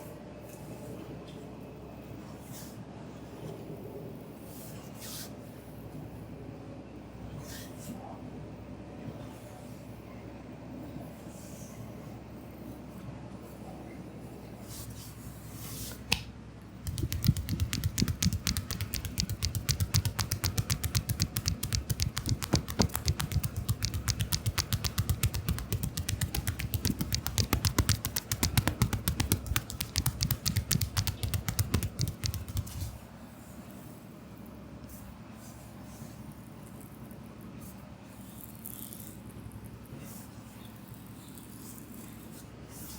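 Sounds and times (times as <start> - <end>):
hands tapping on a back: 16.9 - 32.9.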